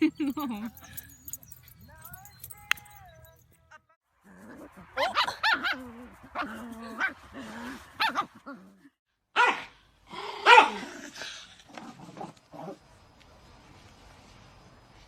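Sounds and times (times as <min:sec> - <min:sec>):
dog barking: 0:05.0 - 0:05.9, 0:08.0 - 0:08.3, 0:09.4 - 0:09.8, 0:10.4 - 0:10.8.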